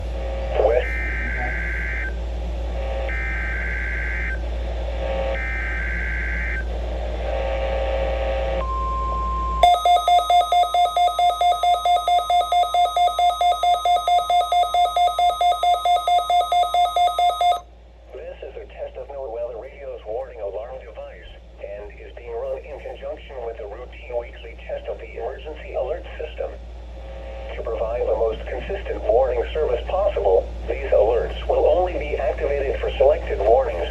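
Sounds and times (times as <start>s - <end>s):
short steady tone: 8.6s - 17.6s
rapid electronic beeping: 9.6s - 17.6s.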